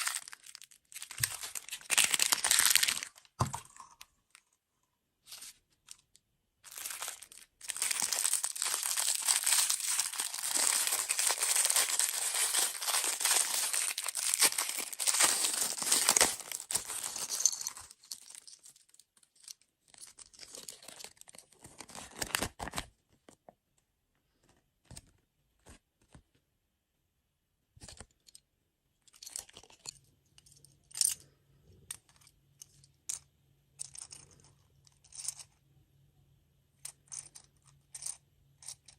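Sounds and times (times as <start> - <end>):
plastic packaging crinkling: 0.0 - 3.6, 6.6 - 19.0.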